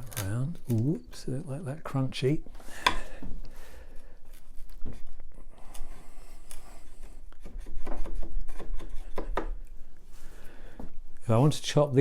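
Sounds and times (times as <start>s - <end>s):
chisel scraping wood: 7.4s - 9.4s.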